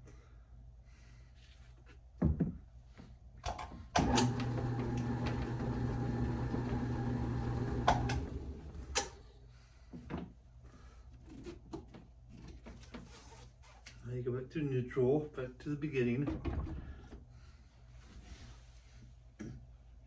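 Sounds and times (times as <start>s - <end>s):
motor humming: 4.0s - 9.1s.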